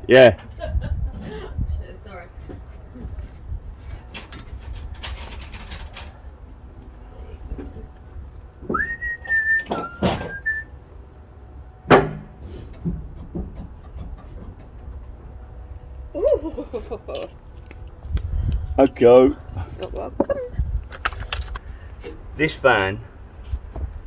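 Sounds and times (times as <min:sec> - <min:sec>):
person whistling: 0:08.7 - 0:10.7
metallic clicks and knocks: 0:18.9 - 0:20.3.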